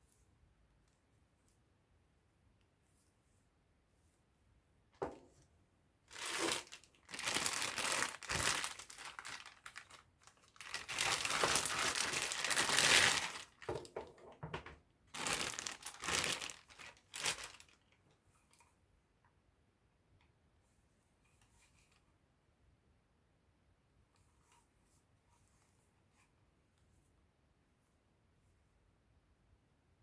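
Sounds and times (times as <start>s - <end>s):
packaging crinkling and rustling: 6.1s - 17.9s.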